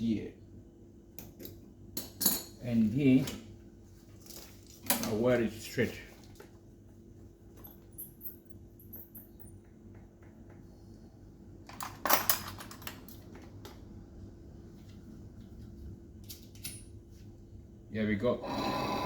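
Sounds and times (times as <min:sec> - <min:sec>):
faint steady hum: 0:00.0 - 0:19.0
tools clicking and clinking: 0:16.2 - 0:17.0.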